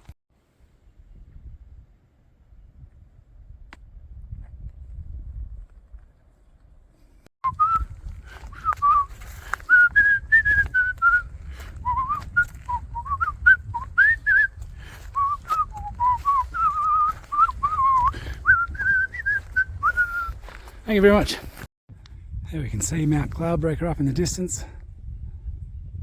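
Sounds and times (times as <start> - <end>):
person whistling a tune: 7.5 - 20.5.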